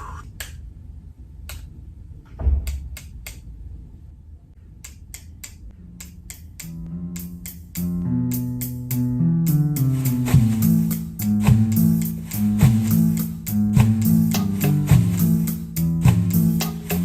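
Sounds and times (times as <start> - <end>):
low thump: 2.4 - 2.7
music beat with pitched notes: 6.1 - 17.0.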